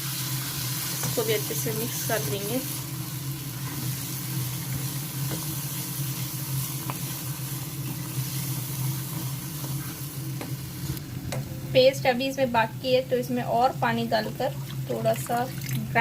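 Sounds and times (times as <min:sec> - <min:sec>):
sizzling in oil in a pan: 0:00.0 - 0:11.4
stirring in a pan: 0:00.1 - 0:11.0
steady low hum: 0:00.7 - 0:16.0.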